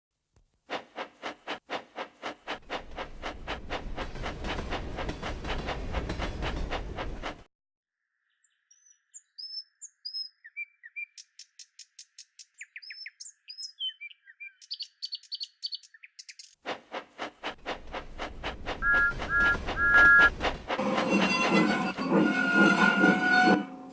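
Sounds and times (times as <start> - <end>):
birds chirping and singing: 8.3 - 16.6
fast chugging over low rumble: 17.2 - 23.4.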